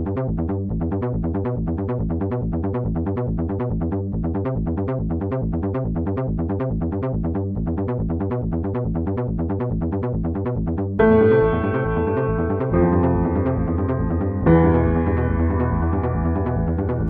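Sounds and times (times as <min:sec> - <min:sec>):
electronic synthesizer music: 0:11.0 - 0:17.0.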